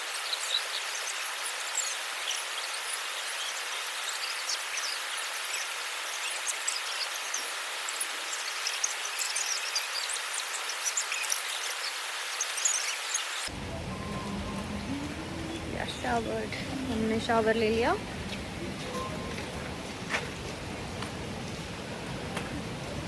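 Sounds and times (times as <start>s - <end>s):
high chirps and ticks: 0.0s - 13.5s
steady outdoor hiss: 0.0s - 23.0s.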